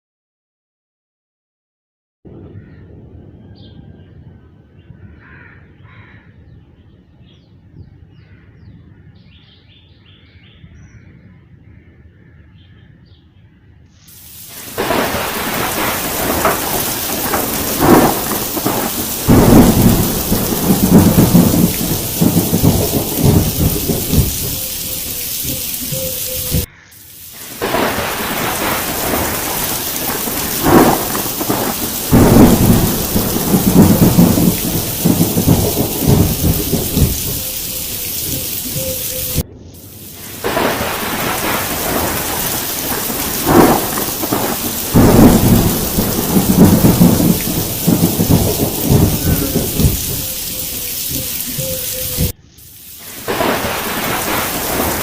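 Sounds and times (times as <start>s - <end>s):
heavy rain hissing: 14.0s - 55.0s
thunder rumbling: 14.3s - 26.7s, 27.3s - 52.4s, 53.0s - 55.0s.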